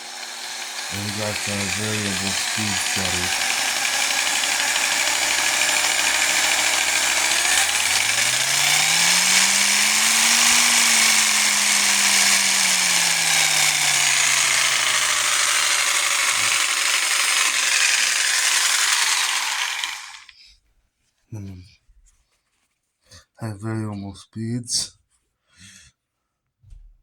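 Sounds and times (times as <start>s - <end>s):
jigsaw motor running: 0.0s - 20.3s.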